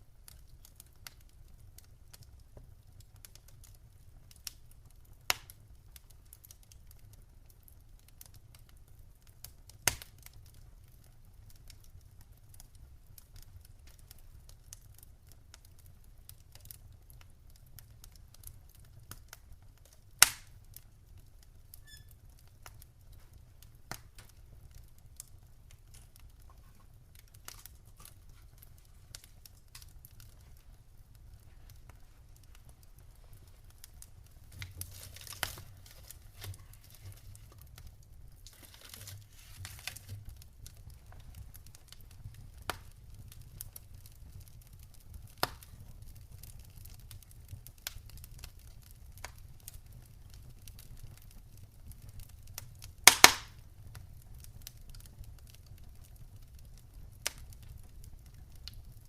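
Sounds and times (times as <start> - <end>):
wood fire crackling: 0.0 - 59.0
loud fire pops: 9.4 - 10.3, 20.1 - 20.7, 51.9 - 53.7.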